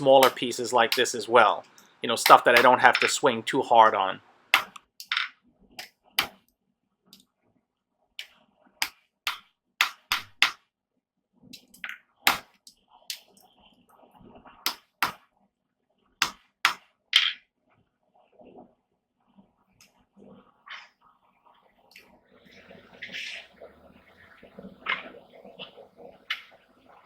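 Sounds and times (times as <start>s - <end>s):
hammer striking steel on anvil: 0.0s - 1.1s, 4.6s - 4.8s.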